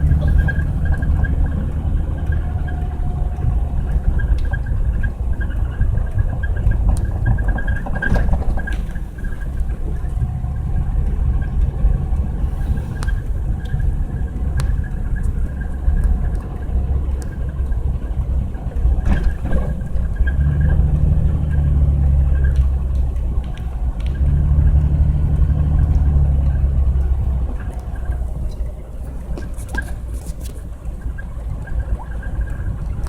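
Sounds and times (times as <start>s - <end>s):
car driving on snow: 0.0s - 33.0s.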